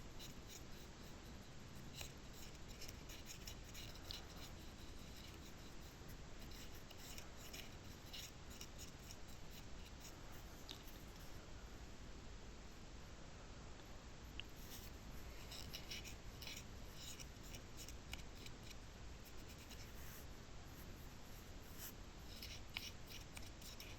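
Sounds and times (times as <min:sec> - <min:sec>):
light scratching and rubbing: 0:00.0 - 0:11.5, 0:14.5 - 0:23.9.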